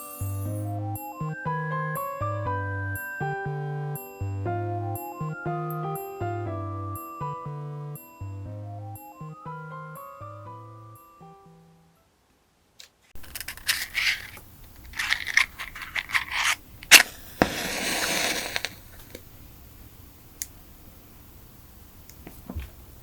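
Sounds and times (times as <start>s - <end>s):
match striking and flaring: 13.2s - 19.3s
small objects rustling and scraping: 13.2s - 19.3s.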